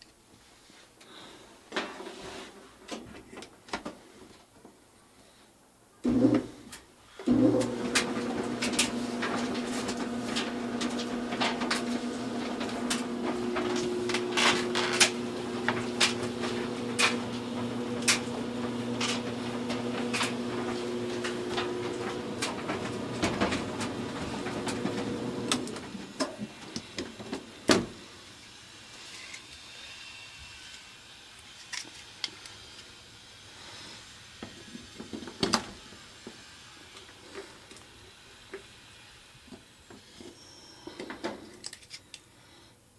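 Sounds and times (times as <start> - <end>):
clothes dryer motor hum: 6.0 - 28.4
dryer clicks: 7.4 - 26.4.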